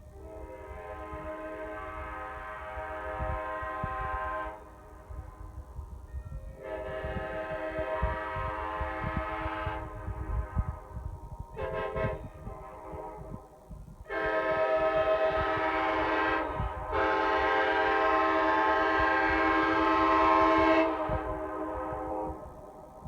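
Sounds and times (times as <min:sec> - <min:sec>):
air horn chord blasts: 0:14.1 - 0:22.5.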